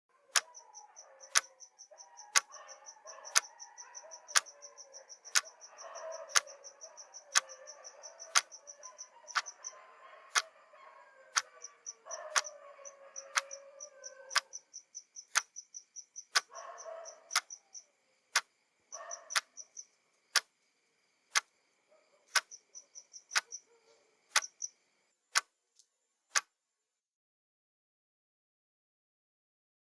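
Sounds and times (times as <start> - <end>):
distant dogs howling: 0.1 - 14.7, 16.4 - 18.0, 21.9 - 24.3
insects chirping: 0.3 - 26.3
clock ticking: 0.4 - 0.6, 1.3 - 1.5, 2.3 - 3.6, 4.2 - 4.5, 5.2 - 5.6, 6.2 - 6.5, 7.3 - 7.6, 8.2 - 8.6, 24.4 - 24.6.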